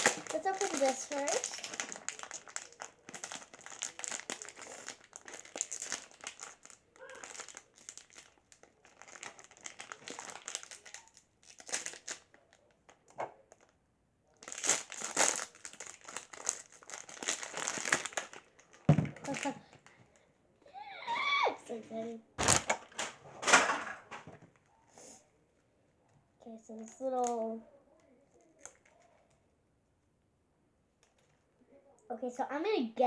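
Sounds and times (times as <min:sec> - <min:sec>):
packaging crinkling: 0:00.0 - 0:13.7, 0:14.4 - 0:20.2, 0:22.4 - 0:23.9, 0:28.4 - 0:29.2.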